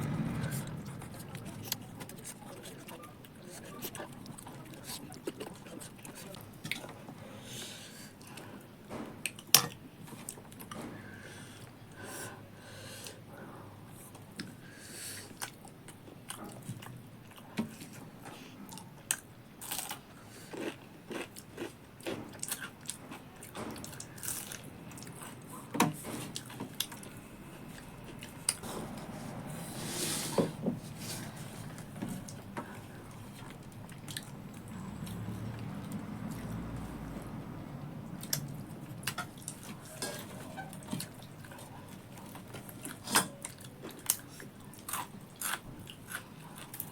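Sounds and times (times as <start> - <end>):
person chewing crunchy food: 19.1 - 25.6, 31.6 - 36.8, 38.2 - 46.9.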